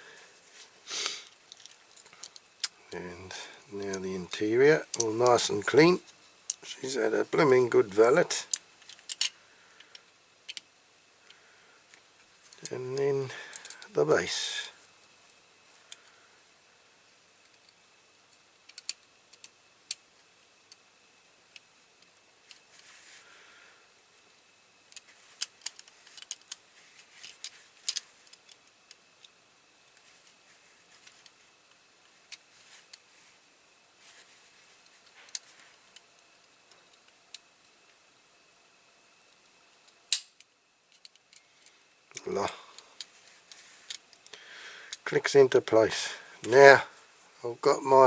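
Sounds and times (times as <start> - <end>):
soft rustle: 0.1 - 2.2, 22.6 - 23.3, 25.1 - 28.2, 32.1 - 35.9, 43.1 - 44.0
toy car parts clicking: 8.5 - 9.3, 18.6 - 20.0, 24.9 - 26.6, 27.2 - 29.4.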